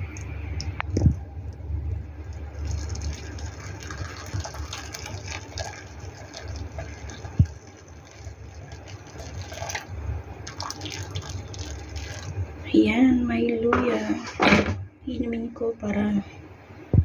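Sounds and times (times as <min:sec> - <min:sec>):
hot water being poured: 0:02.2 - 0:12.4.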